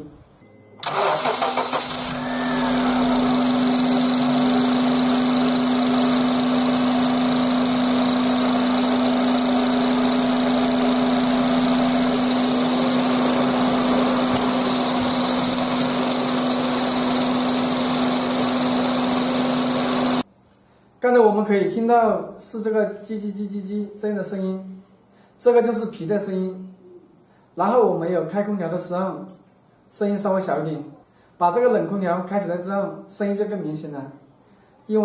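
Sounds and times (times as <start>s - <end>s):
car engine running: 0.9s - 20.2s.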